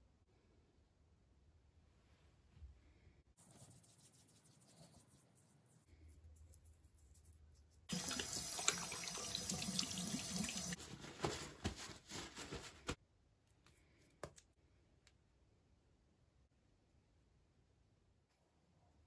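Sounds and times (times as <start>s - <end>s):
water running from tap into sink: 7.9s - 10.8s.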